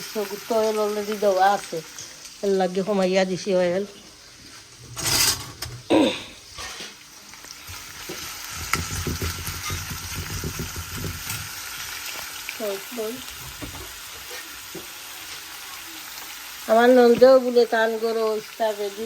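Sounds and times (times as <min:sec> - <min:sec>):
onions sizzling in hot oil: 0:00.0 - 0:05.7, 0:06.3 - 0:19.0
utensil knocking against pan: 0:08.5 - 0:11.4.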